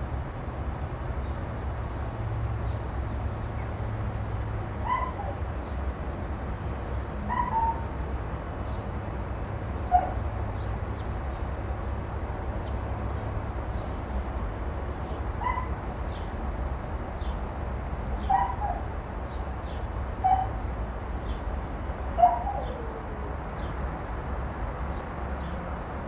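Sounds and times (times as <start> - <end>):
dog yelping barks: 4.8 - 5.4, 7.3 - 8.0, 9.9 - 10.3, 15.4 - 15.8, 18.2 - 18.9, 20.2 - 20.6, 22.2 - 23.1.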